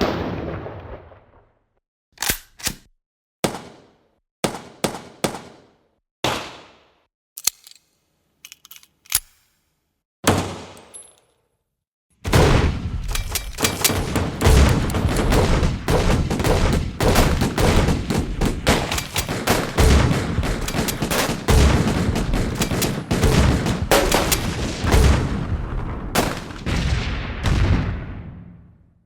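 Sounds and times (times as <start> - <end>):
dense gunfire: 0.0 - 1.4, 12.2 - 28.8
heavy low booms: 23.3 - 28.8.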